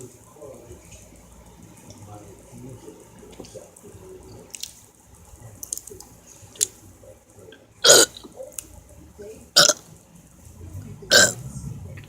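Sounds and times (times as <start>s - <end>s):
person burping: 7.8s - 8.2s, 9.6s - 9.8s, 11.1s - 11.4s.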